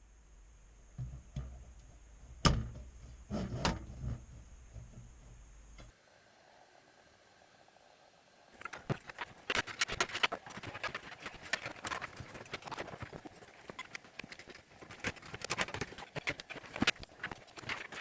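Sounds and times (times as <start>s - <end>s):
computer parts clicking and knocking: 8.6s - 18.0s.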